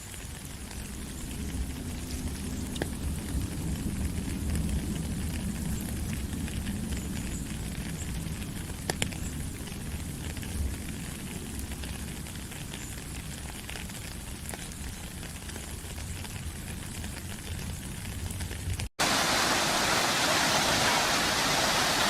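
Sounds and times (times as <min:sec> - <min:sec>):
small crackles: 0:00.0 - 0:18.9
water rushing: 0:19.0 - 0:22.0.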